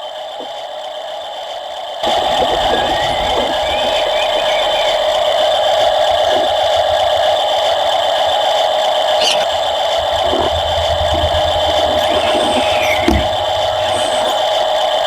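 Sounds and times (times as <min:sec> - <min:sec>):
electric motor whine: 0:02.0 - 0:15.0
low rumbles: 0:02.0 - 0:15.0
high squeak: 0:09.1 - 0:15.0.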